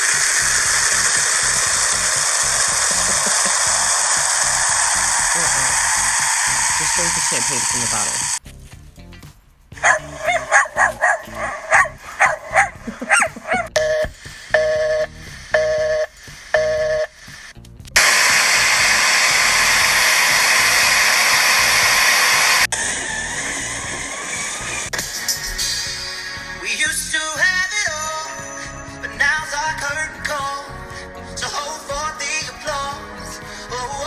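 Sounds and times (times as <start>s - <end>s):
loud steady hiss: 0.0s - 8.4s, 11.2s - 34.0s
yelp-like blips: 9.8s - 17.1s
electronic beeps: 13.4s - 17.2s.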